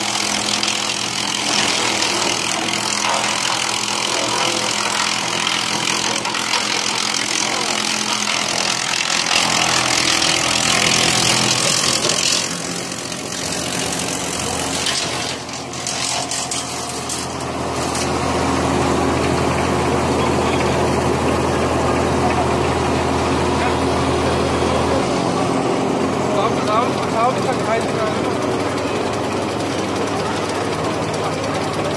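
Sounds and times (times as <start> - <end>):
wood chipper grinding branches: 0.0 - 31.9.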